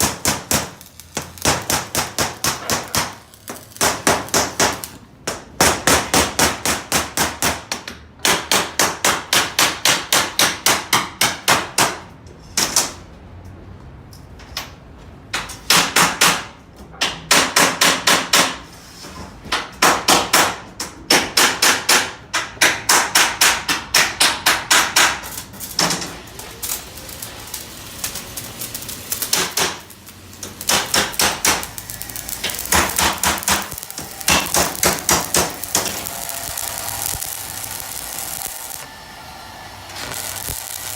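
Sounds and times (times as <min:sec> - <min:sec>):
hammer striking steel plate: 0:30.5 - 0:39.3.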